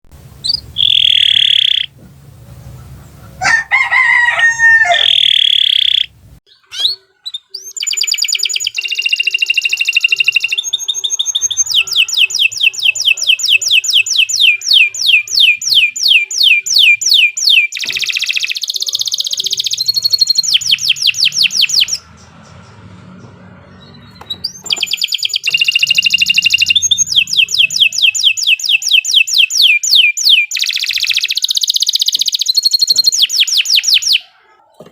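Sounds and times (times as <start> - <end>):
canary singing trills: 0.3 - 34.7
lower bird call bending pitch: 0.4 - 2.0, 4.4 - 6.1.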